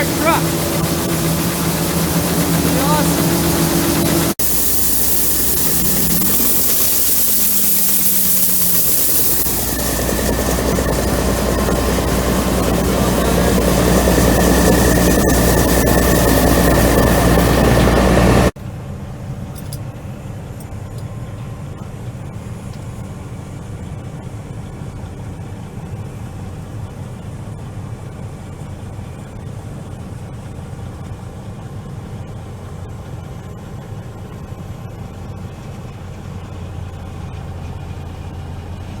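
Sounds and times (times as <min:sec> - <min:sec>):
harvest machinery roar: 0:00.0 - 0:18.6
heavy engine running at low speed: 0:00.0 - 0:39.0.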